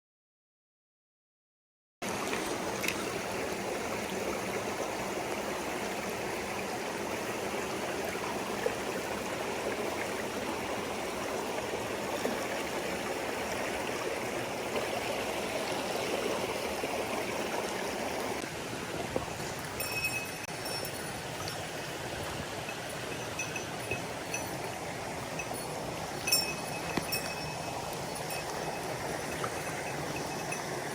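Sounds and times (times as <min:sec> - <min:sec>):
stream rushing over rocks: 0:02.0 - 0:30.9
faint high chimes: 0:19.8 - 0:30.9.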